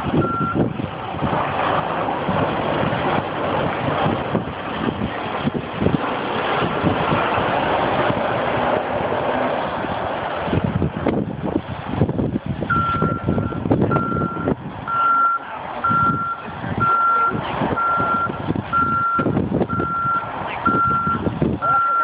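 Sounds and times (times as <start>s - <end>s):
truck engine rumble: 0.0s - 22.0s
truck reversing alarm beeping: 0.1s - 0.7s, 12.7s - 22.0s.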